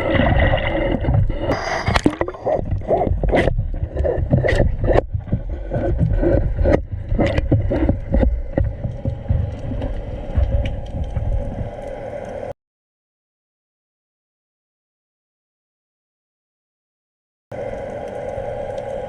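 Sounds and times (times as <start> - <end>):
steady hum: 0.0 - 12.5, 17.5 - 19.0
steady low rumble: 0.0 - 12.5
water sloshing and gurgling: 0.0 - 12.5
knocks and clicks: 0.9 - 11.8.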